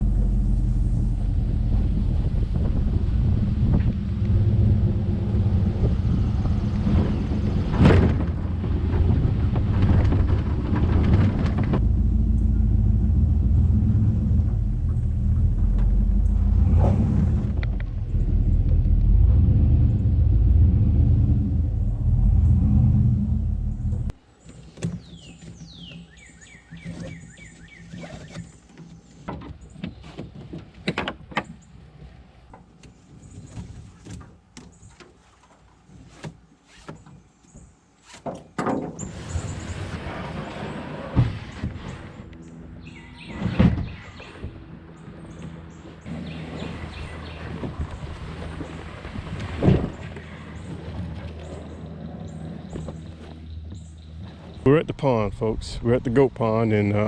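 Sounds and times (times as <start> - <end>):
moving vehicle rumble: 0.0 - 35.0, 39.0 - 57.0
birds chirping: 21.7 - 30.2, 39.0 - 49.1, 49.7 - 57.0.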